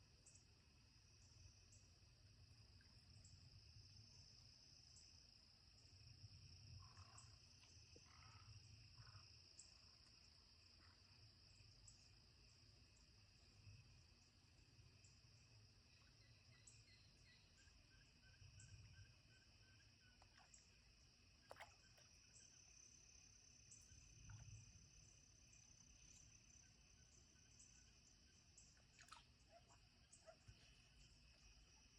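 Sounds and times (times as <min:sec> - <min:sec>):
insects trilling: 0:06.7 - 0:31.9.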